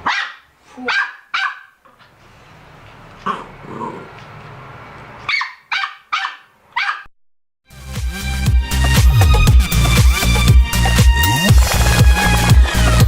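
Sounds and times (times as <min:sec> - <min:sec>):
dog barking: 0:00.0 - 0:01.8, 0:05.3 - 0:07.1.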